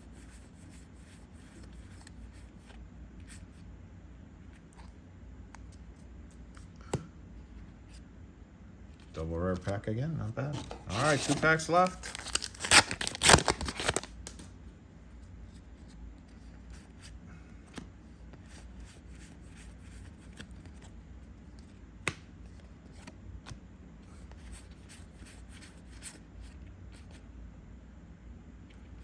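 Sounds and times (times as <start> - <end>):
foil pack tearing: 10.6 - 14.2.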